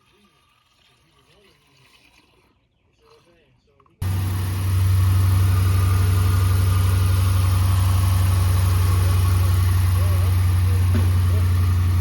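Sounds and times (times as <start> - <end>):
car engine idling: 4.0 - 12.0.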